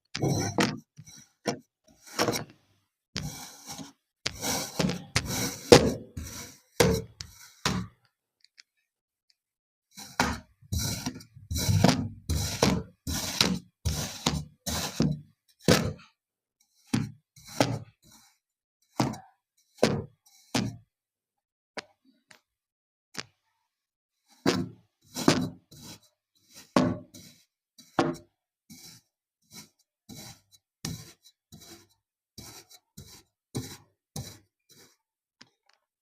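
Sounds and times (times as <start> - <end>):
knife cutting kinetic sand: 3.2 - 7.8, 10.0 - 15.2, 28.7 - 35.0.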